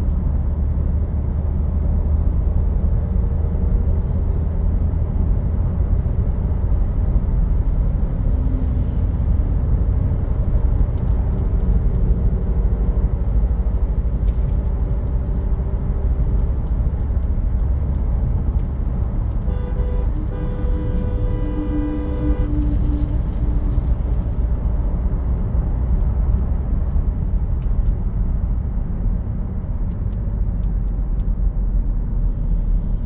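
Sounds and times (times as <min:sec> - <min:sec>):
car engine and road rumble: 0:00.0 - 0:33.0
vehicle horn honking: 0:19.4 - 0:23.9.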